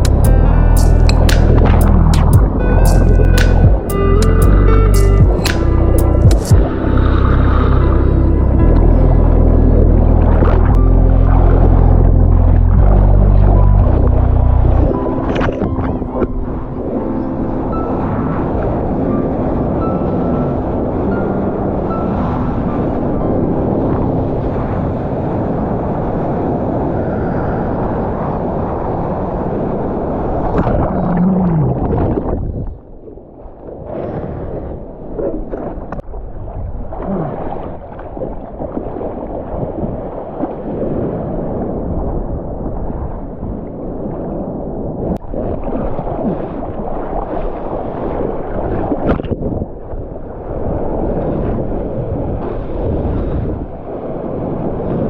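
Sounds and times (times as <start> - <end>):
wind buffeting microphone: 0.0 - 55.0
surf water rushing and splashing: 5.0 - 32.7, 33.4 - 55.0.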